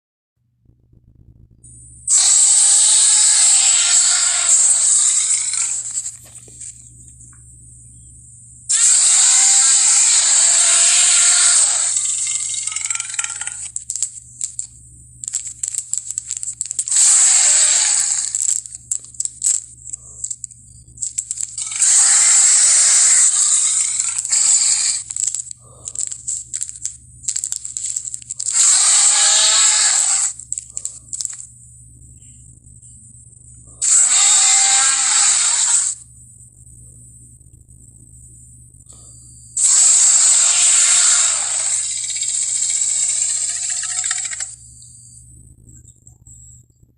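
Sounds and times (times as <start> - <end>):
crackling clicks: 10.3 - 31.6.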